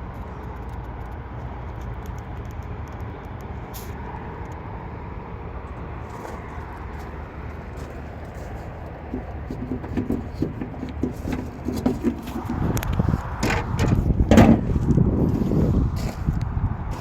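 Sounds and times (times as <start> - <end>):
footsteps walking: 6.0 - 10.0
sharp knocks and scrapes: 6.1 - 16.4.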